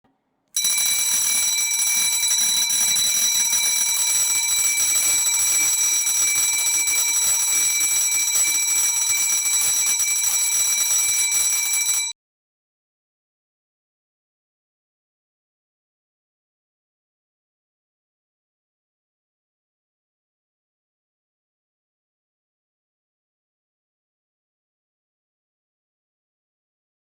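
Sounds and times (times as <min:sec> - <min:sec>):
school bell ringing: 0:00.6 - 0:12.2.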